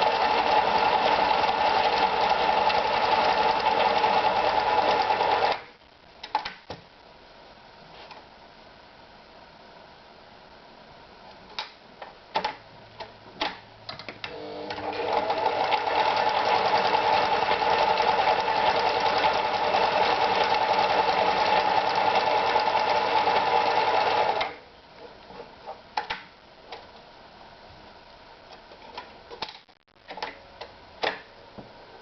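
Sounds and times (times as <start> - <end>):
sewing machine running: 0.0 - 5.6, 14.3 - 24.6.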